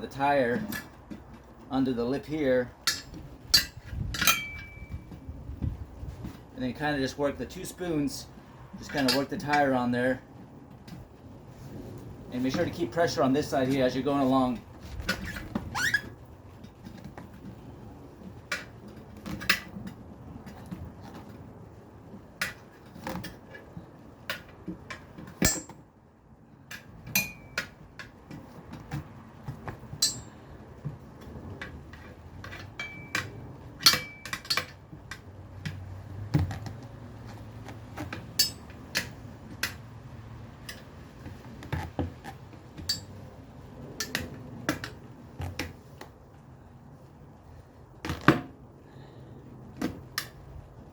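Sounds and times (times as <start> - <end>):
rubber tire scraping and creaking: 0.0 - 25.9, 26.5 - 50.9
tire spoons clanking on rim: 2.0 - 5.2, 8.8 - 10.1, 22.4 - 25.9, 26.7 - 29.0, 29.7 - 36.4, 38.0 - 39.8, 42.7 - 43.3.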